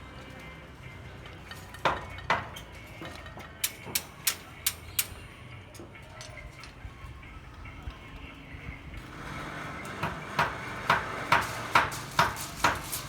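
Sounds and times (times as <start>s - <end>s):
steel bars clanking: 9.4s - 13.0s.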